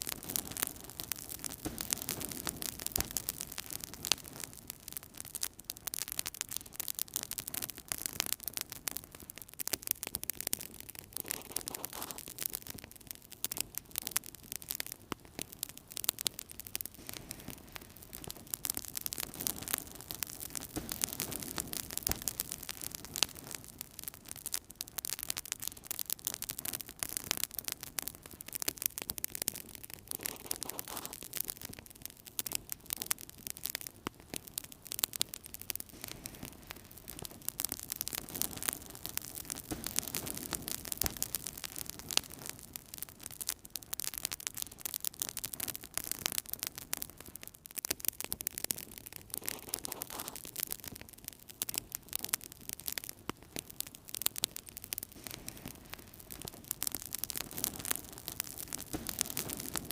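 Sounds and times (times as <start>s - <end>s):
fire crackling and popping: 0.0s - 59.9s
rush of flame: 10.6s - 12.5s, 28.9s - 31.8s, 48.7s - 50.7s, 54.8s - 59.9s.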